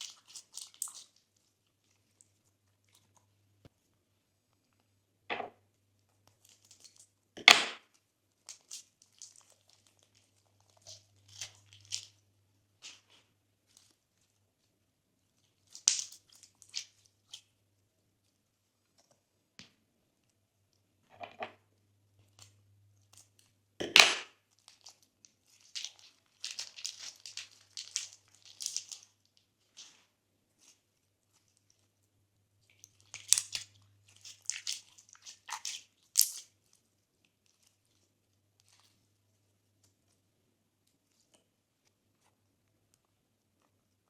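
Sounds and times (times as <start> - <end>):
slime crackling and popping: 15.6 - 17.4, 23.0 - 29.2, 32.7 - 36.5.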